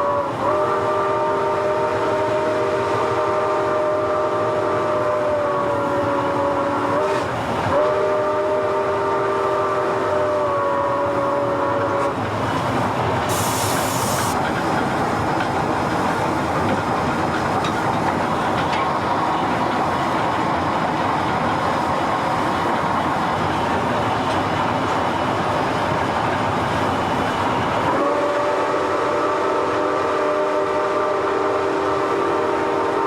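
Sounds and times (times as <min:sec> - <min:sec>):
chime steam whistle blowing: 0:00.0 - 0:12.1, 0:27.9 - 0:33.0
steam locomotive running: 0:00.0 - 0:33.0
steam hiss: 0:00.5 - 0:33.0.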